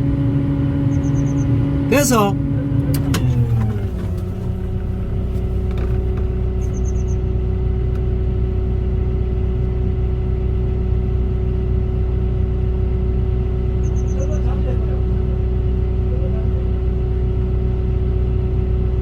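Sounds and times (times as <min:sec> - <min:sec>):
excavator diesel engine running: 0:00.0 - 0:09.9, 0:12.4 - 0:19.0.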